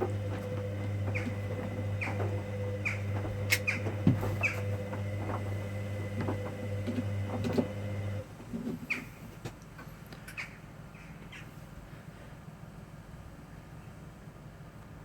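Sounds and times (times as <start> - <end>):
washing machine motor hum: 0.0 - 8.5.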